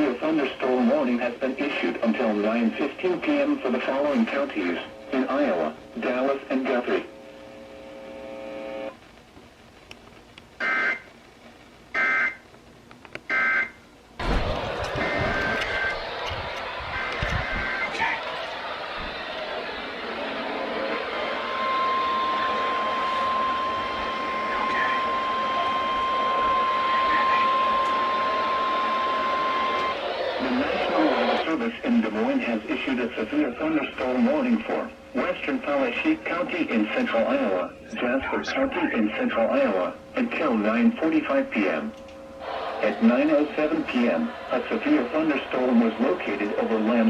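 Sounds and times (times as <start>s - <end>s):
radio static: 0.0s - 47.0s
steady warning alarm tone: 10.6s - 11.1s, 11.9s - 12.4s, 13.3s - 19.1s, 20.5s - 31.6s.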